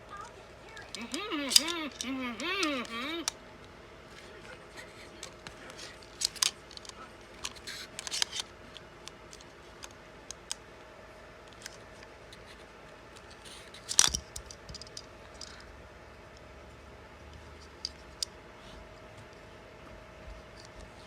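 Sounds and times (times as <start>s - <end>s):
plastic toy pieces clicking: 0.8s - 3.4s, 5.2s - 8.5s, 13.7s - 15.6s.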